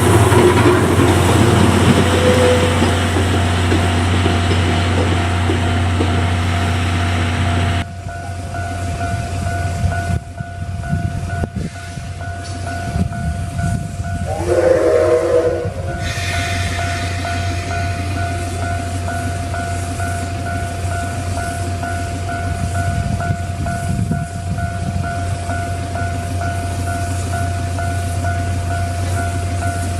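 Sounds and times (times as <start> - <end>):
steam train running: 0.0 - 29.9
steam whistle: 2.0 - 2.9, 14.2 - 18.1
level-crossing alarm ringing: 12.2 - 29.9.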